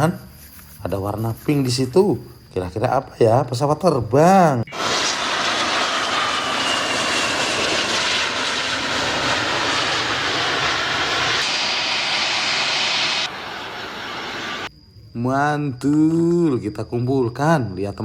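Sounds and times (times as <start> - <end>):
faint engine whine: 4.6 - 14.8
jet engine rushing: 4.7 - 14.7.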